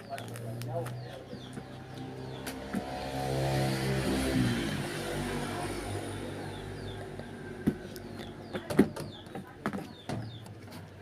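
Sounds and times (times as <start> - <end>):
vehicle engine passing by: 0.2 - 8.5.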